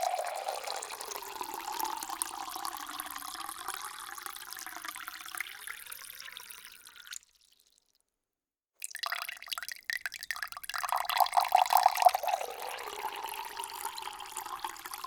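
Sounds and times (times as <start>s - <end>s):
water pouring into a container: 0.0s - 7.8s, 8.8s - 15.0s.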